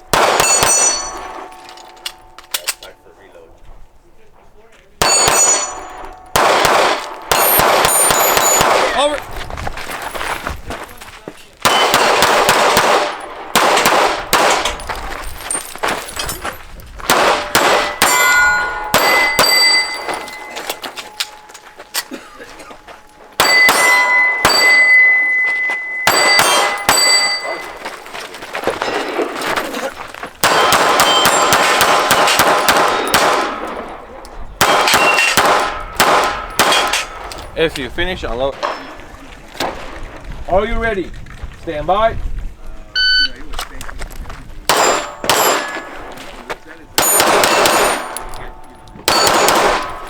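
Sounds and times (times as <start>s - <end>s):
pistol shots: 0.1s - 2.8s, 5.0s - 9.2s, 11.6s - 14.9s, 17.1s - 21.5s, 23.4s - 27.7s, 30.4s - 37.4s, 44.7s - 46.1s, 47.0s - 50.0s
steel plates clanging: 0.4s - 2.8s, 5.0s - 6.4s, 17.4s - 28.1s.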